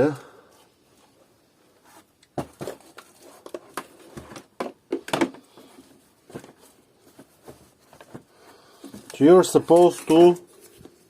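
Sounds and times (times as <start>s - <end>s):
plastic parts clicking and knocking: 2.3s - 5.5s.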